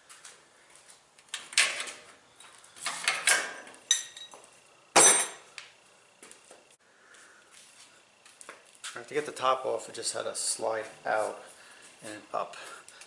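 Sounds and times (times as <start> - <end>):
ringing metal clank: 3.4 - 4.4, 5.0 - 5.4.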